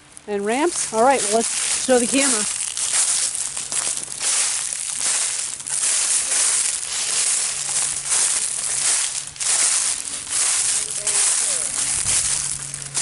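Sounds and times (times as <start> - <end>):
footsteps crunching dry leaves: 0.0 - 13.0.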